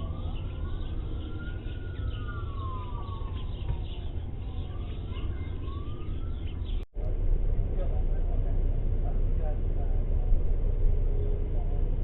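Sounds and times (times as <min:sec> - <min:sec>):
police siren wailing: 0:00.0 - 0:06.8
steady low rumble: 0:00.0 - 0:12.0.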